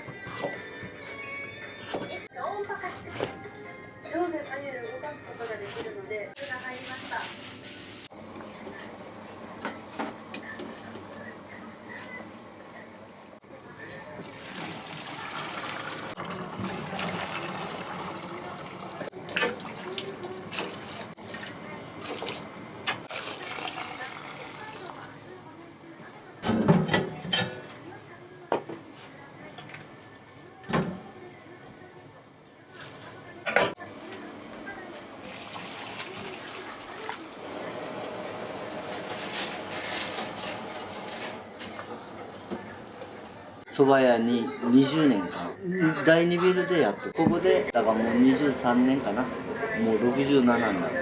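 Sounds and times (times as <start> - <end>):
kitchen clatters: 26.4 - 27.8, 32.8 - 33.8.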